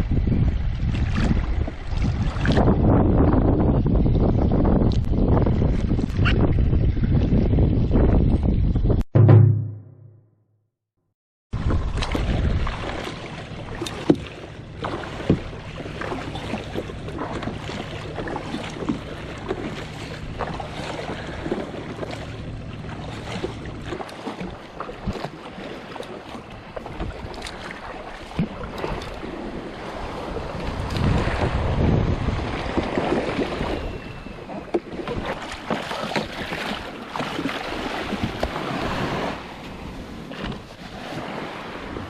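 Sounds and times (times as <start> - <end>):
water sloshing around kayak: 0.0 - 2.8, 11.6 - 42.0
wind buffeting microphone: 0.0 - 9.1, 11.6 - 25.7, 26.4 - 42.0
sharp knocks: 9.1 - 10.2.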